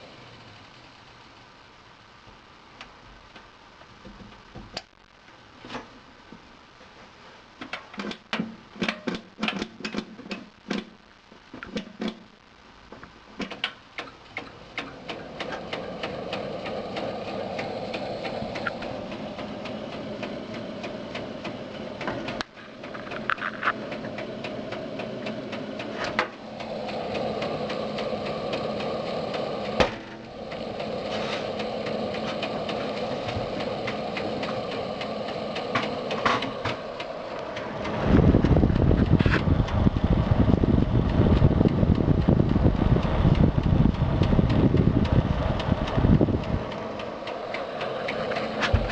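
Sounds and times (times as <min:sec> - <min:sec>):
computer fans whirring: 0:00.0 - 0:48.9
scattered clicks: 0:13.0 - 0:48.9.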